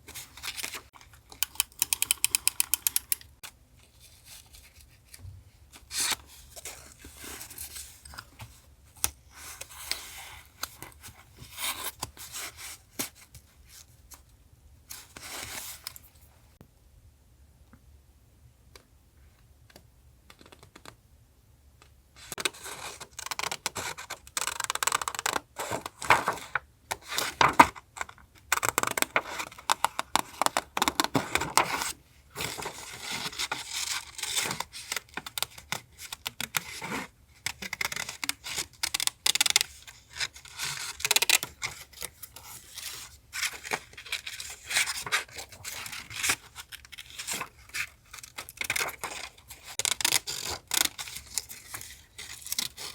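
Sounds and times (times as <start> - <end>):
paper rustling and scraping: 25.6 - 27.7, 31.1 - 34.8.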